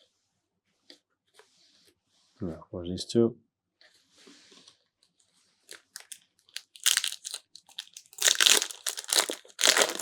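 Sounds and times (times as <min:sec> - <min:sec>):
foil wrapper crinkling and tearing: 0:05.7 - 0:10.0.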